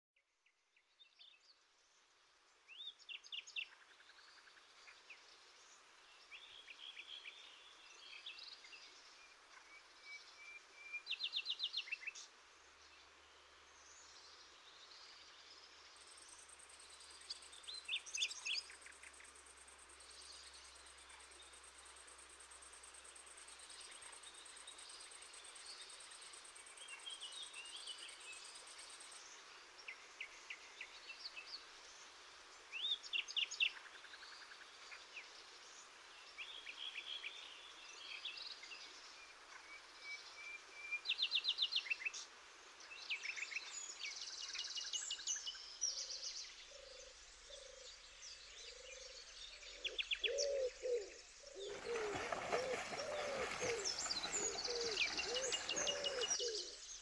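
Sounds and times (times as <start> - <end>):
birds chirping and trilling: 46.7 - 57.0
rushing water: 51.6 - 56.4.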